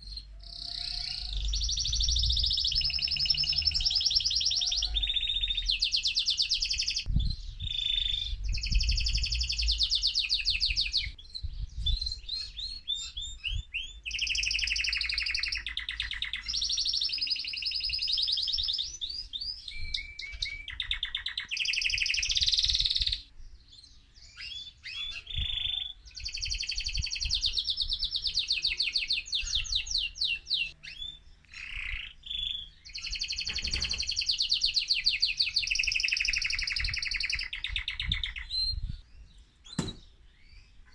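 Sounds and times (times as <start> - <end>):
canary singing trills: 0.0 - 40.9.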